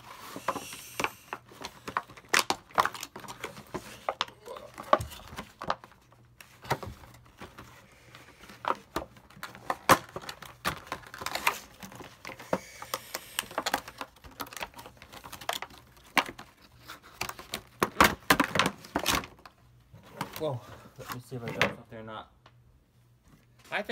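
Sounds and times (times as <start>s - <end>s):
plastic crinkling: 0.0s - 21.3s
scissors cutting plastic packaging: 0.2s - 5.8s, 8.7s - 19.3s.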